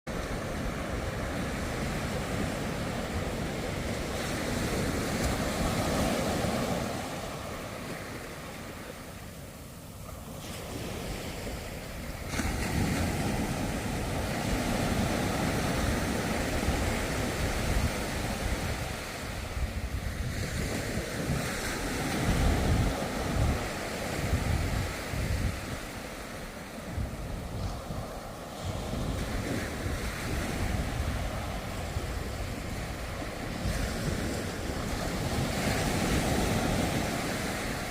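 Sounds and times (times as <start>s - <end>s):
ocean surf breaking: 0.1s - 37.9s
wind buffeting microphone: 0.1s - 37.9s.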